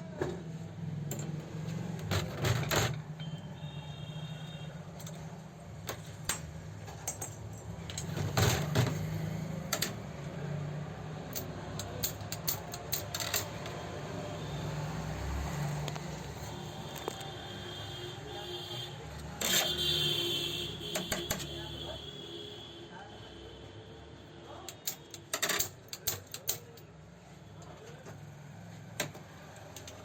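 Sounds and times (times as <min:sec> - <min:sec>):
metallic clicks of small parts: 0:11.3 - 0:13.8, 0:24.7 - 0:26.9, 0:29.0 - 0:30.0.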